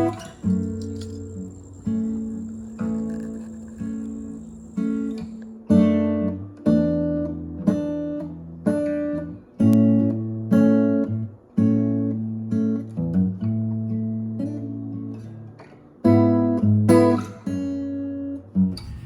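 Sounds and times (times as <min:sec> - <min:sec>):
acoustic guitar strumming: 0:00.0 - 0:07.2.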